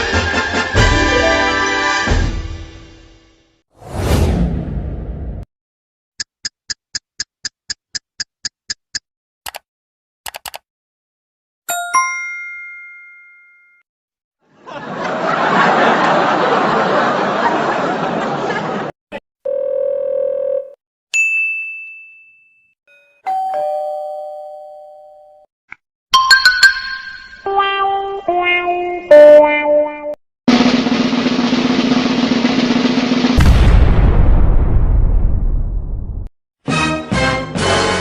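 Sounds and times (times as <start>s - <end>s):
ringing ding: 21.2s - 24.8s.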